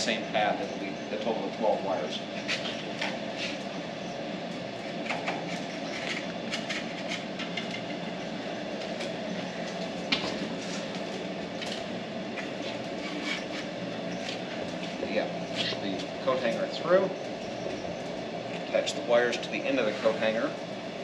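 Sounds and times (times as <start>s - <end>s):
steady background hum: 0.0s - 21.0s
coat hanger and wires scraping: 11.6s - 15.9s.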